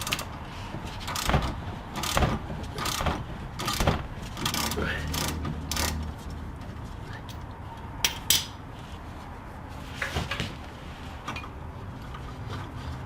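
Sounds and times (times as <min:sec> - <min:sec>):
socket wrench clicking and scraping: 0:03.6 - 0:06.0.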